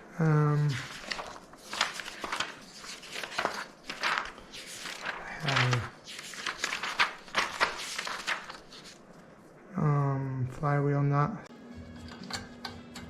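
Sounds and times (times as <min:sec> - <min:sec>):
packaging rustling and crinkling: 0:00.6 - 0:09.1.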